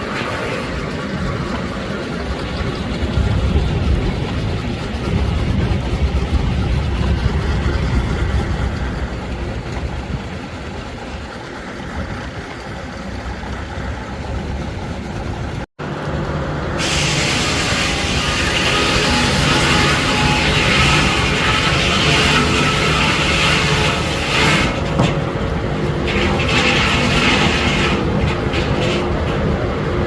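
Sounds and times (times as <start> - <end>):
sawmill machinery running: 0.0 - 30.0.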